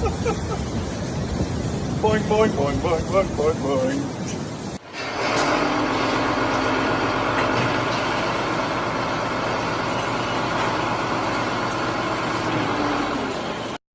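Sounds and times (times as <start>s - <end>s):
heavy engine running: 0.0s - 13.8s.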